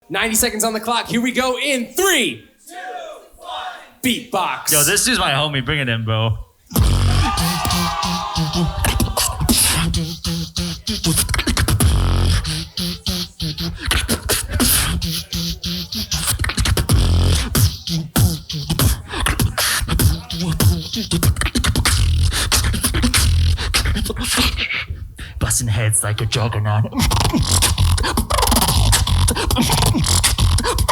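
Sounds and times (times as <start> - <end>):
person beatboxing: 6.7 - 30.9.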